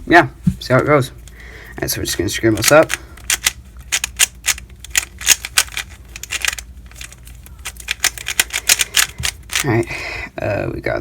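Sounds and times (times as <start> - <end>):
puzzle cube plastic clicking: 2.5 - 9.7.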